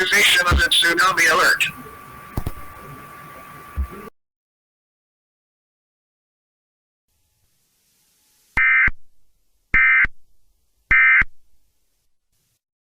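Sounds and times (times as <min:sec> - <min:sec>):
data tone bursts: 0:00.0 - 0:01.9.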